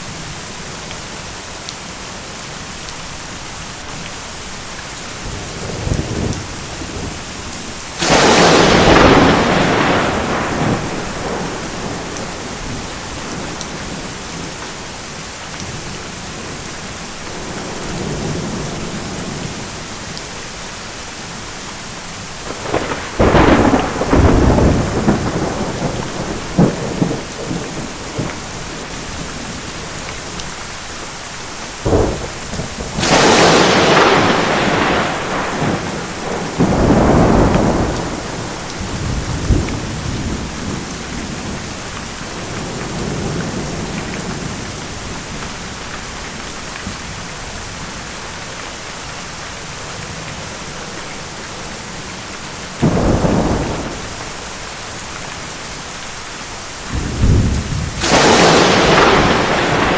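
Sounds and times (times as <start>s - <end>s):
heavy rain: 0.0s - 59.9s
thunder claps and rumbles: 5.2s - 14.8s, 22.4s - 30.5s, 31.8s - 48.6s, 49.3s - 55.5s, 56.8s - 59.9s.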